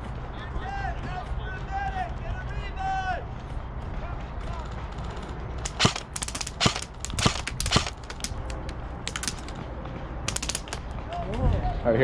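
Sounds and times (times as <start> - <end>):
airsoft guns firing: 5.6 - 9.6, 10.3 - 11.0.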